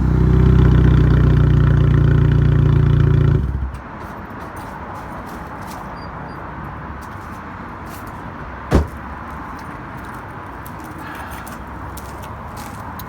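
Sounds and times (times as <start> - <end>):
car engine idling: 0.0 - 3.8
loud thump: 8.7 - 9.0.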